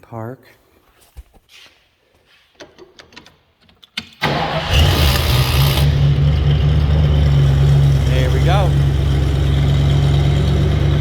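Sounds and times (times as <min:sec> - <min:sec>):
car engine starting and running: 0:04.2 - 0:11.0.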